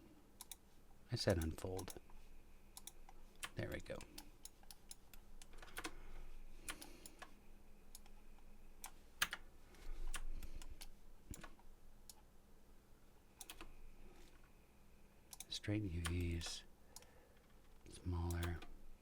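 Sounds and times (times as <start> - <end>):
mouse buttons clicking: 1.3 - 2.0, 2.8 - 6.0, 13.4 - 13.7, 18.2 - 18.7.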